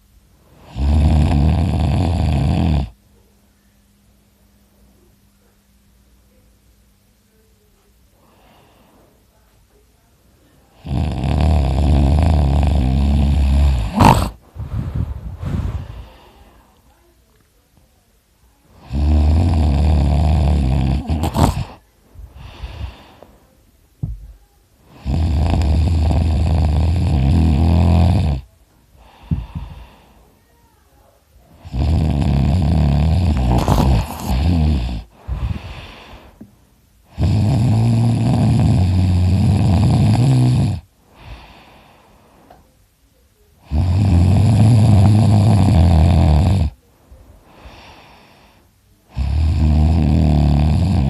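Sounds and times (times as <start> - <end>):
person snoring loudly: 0.6 - 3.0, 10.8 - 16.3, 18.8 - 21.8, 24.9 - 29.9, 31.6 - 36.2, 37.1 - 41.6, 43.6 - 46.8, 49.1 - 51.0
quiet breath: 7.3 - 10.8, 12.8 - 19.3, 20.0 - 31.9, 32.8 - 37.8, 40.6 - 43.9, 46.5 - 51.0.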